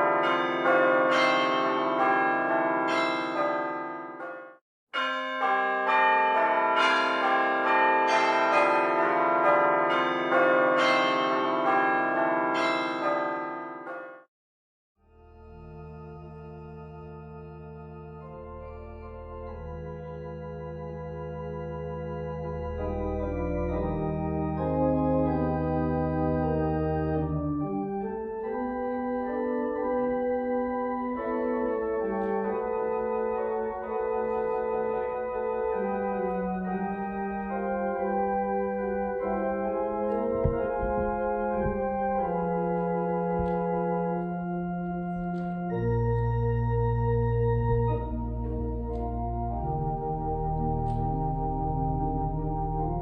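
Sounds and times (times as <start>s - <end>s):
organ playing sustained chords: 0.0s - 4.4s, 5.2s - 14.1s, 15.1s - 53.0s
church bells ringing: 0.0s - 14.3s, 15.6s - 53.0s
deep organ bass pedal notes: 15.2s - 53.0s.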